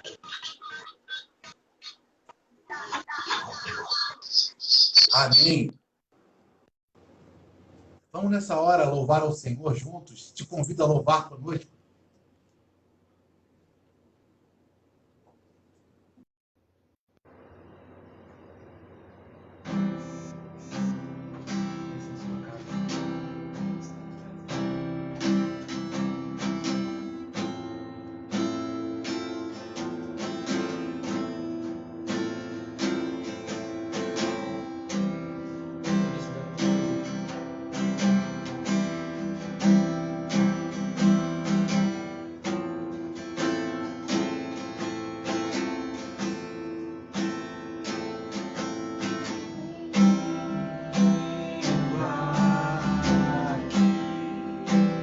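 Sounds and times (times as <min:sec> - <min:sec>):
acoustic guitar strumming chords: 0:19.5 - 0:55.0.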